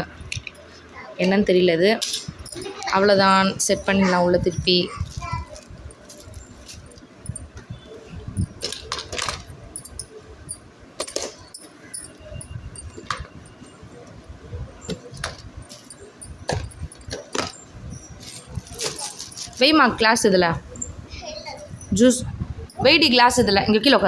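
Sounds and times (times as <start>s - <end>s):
clinks and knocks: 2.0s - 2.9s, 5.8s - 7.7s, 8.4s - 13.7s, 14.9s - 19.8s
items packed into a bag: 5.0s - 7.5s, 14.9s - 19.8s.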